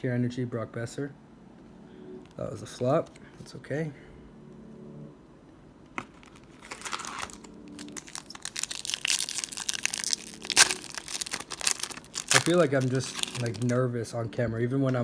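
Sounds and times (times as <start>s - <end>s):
foil wrapper crinkling and tearing: 6.0s - 13.8s
sharp crackle: 6.1s - 13.8s.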